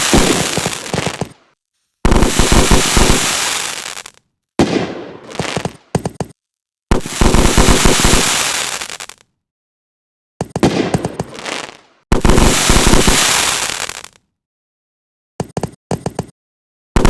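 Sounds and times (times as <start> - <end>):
fireworks bangs and crackling: 0.0 - 6.3, 6.9 - 9.2, 10.6 - 14.2.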